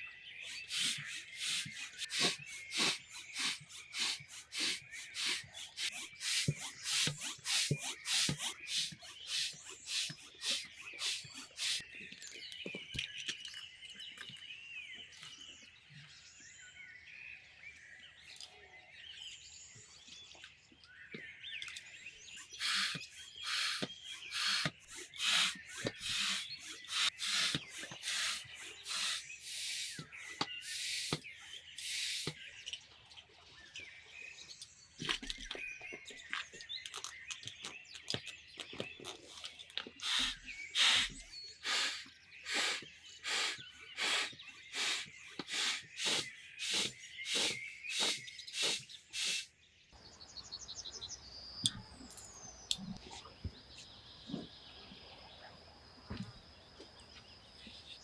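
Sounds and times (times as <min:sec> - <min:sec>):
birds chirping and trilling: 0:00.0 - 0:58.0
rasping scraping strokes: 0:00.5 - 0:11.8, 0:22.3 - 0:32.3, 0:40.0 - 0:49.4.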